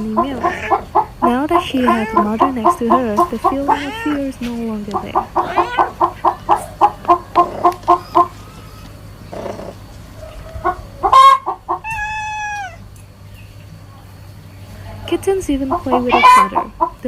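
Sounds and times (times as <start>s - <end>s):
chickens clucking: 0.0s - 17.0s
long chicken call: 5.2s - 12.9s, 15.8s - 16.9s.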